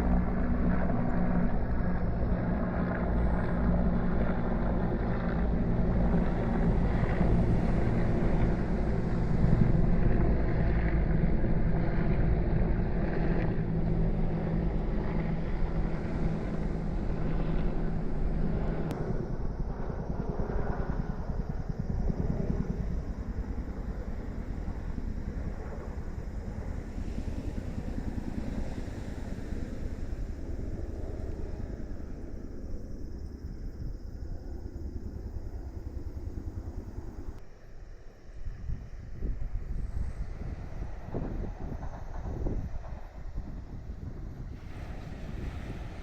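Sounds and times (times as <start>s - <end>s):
low engine drone: 0.0s - 37.5s.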